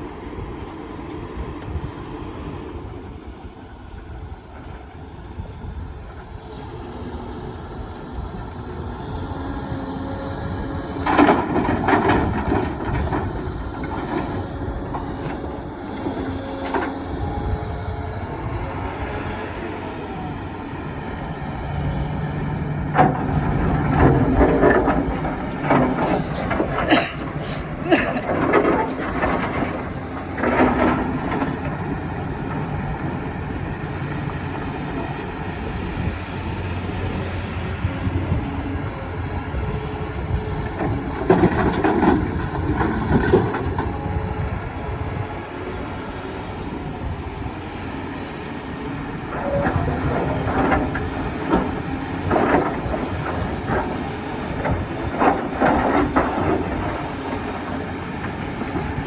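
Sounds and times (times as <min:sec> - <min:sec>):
excavator running: 0:00.0 - 0:59.0.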